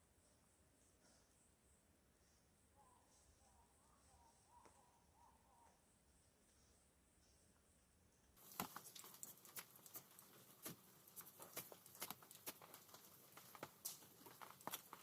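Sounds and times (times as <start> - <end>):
campfire crackling: 8.4 - 15.0.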